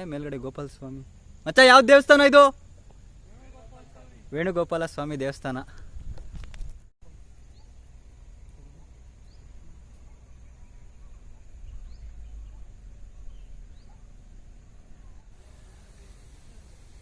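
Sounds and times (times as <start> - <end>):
bird chirping: 7.1 - 16.1.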